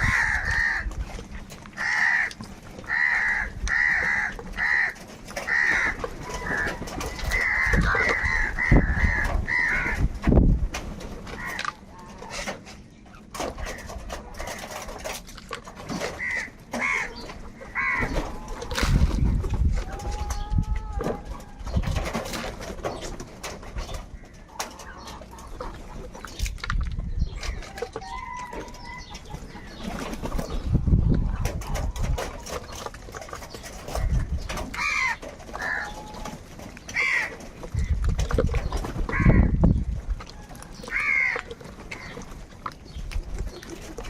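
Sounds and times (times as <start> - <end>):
crows cawing: 0.0 - 0.9, 1.8 - 10.1, 11.3 - 12.4, 16.1 - 18.6, 34.8 - 36.3, 36.9 - 37.9, 39.1 - 39.6, 40.9 - 42.2
crows squabbling: 0.0 - 10.3, 11.2 - 26.6, 27.2 - 44.0.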